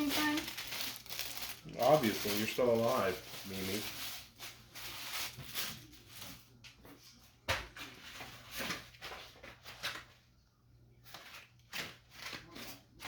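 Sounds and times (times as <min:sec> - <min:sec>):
kitchen rustling and clatters: 0:00.0 - 0:13.0.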